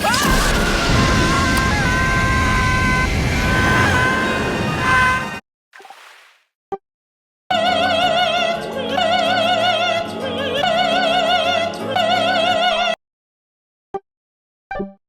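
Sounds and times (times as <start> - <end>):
operatic woman singing: 7.5 - 13.0.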